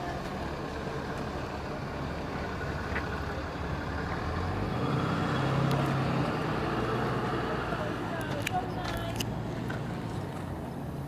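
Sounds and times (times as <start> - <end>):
vehicle engine running: 0.0 - 10.8
traffic noise: 0.0 - 11.0.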